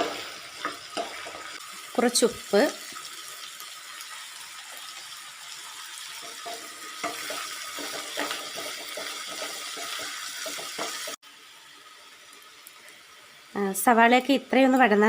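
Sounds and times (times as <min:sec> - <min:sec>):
vegetables sizzling in oil: 0:00.0 - 0:15.0
spatula scraping a pan: 0:06.1 - 0:11.2.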